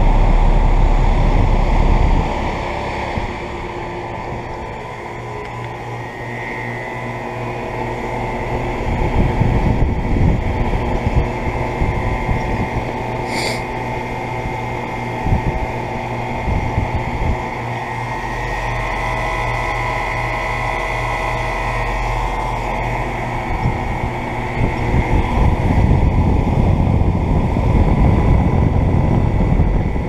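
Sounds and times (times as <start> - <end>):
low rumbles: 0.0 - 6.5, 21.5 - 30.0
air conditioner units running: 0.0 - 30.0.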